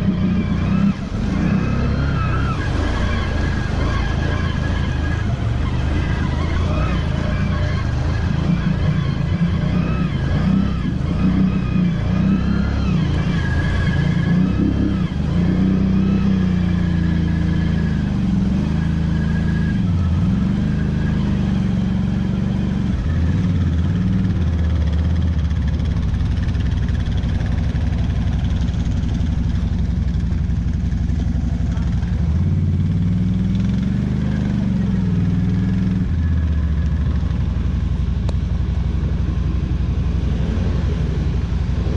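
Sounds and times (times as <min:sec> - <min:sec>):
atv engine revving: 0:00.0 - 0:41.9.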